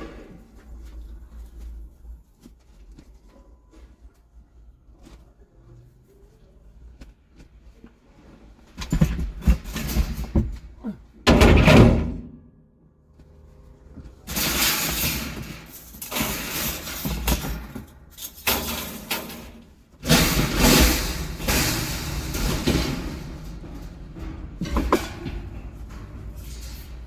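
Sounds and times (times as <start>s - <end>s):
metal rattling and scraping: 8.2s - 12.5s, 13.4s - 27.0s
scrap metal clattering and banging: 8.2s - 12.6s, 13.4s - 27.0s
loud metal bang: 20.0s - 26.6s.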